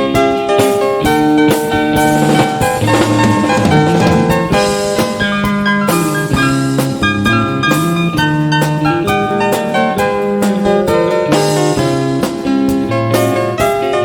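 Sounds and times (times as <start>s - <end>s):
bass: 0.0s - 14.0s
piano: 0.0s - 14.0s
guitars: 0.8s - 8.2s
pedal steel guitar: 1.6s - 5.4s
drum kit beat: 1.8s - 5.2s.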